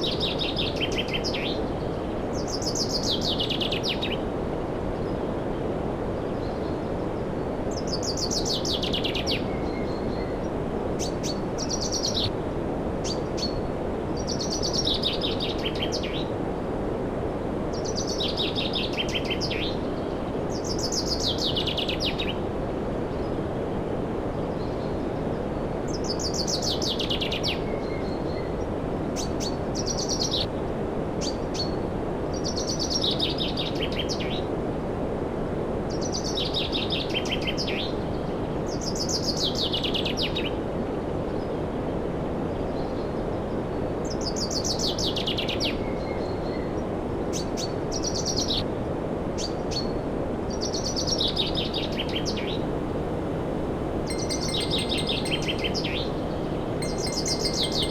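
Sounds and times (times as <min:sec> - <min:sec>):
bird singing trilled phrase: 0:52.4 - 0:57.9.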